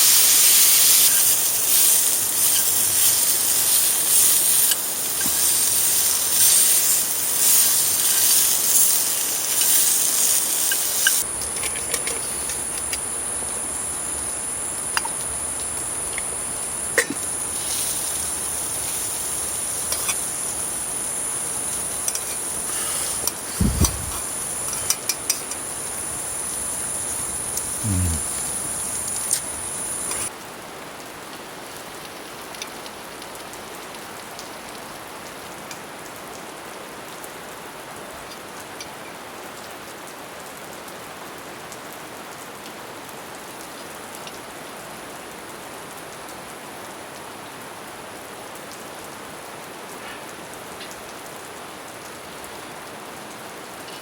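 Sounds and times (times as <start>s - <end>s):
high insect trill: 0.0s - 30.3s
steady rain falling: 0.0s - 54.0s
knocks: 23.6s - 24.2s
low thumps: 23.6s - 24.2s.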